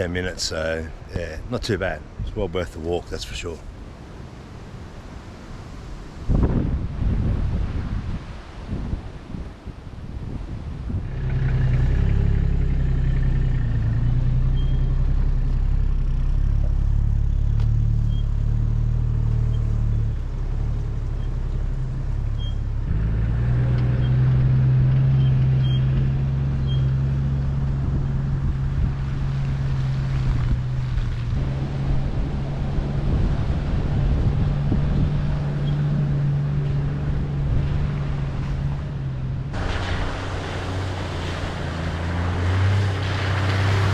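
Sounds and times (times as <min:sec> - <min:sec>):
vehicle engine running: 0:10.9 - 0:43.9.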